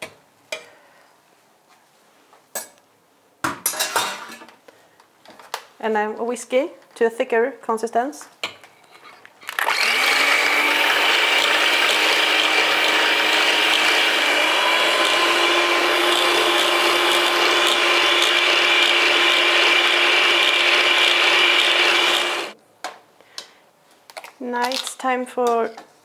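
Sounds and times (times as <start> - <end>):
electric hand mixer whirring: 9.6 - 22.6.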